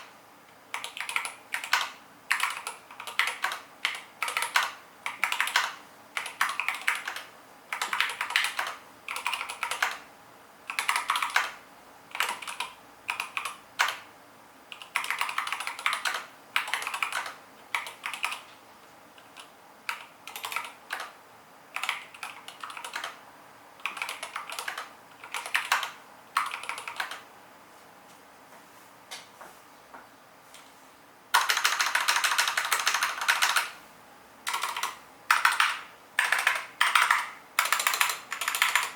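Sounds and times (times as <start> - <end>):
typing on mechanical keyboard: 0.7 - 10.1, 10.7 - 14.1, 14.7 - 18.5, 19.2 - 23.2, 23.8 - 27.2, 31.3 - 33.8, 34.5 - 38.9.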